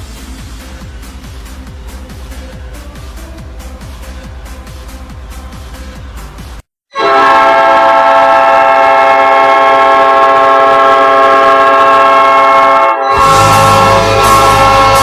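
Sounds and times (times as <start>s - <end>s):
goal horn chord: 6.9s - 15.0s.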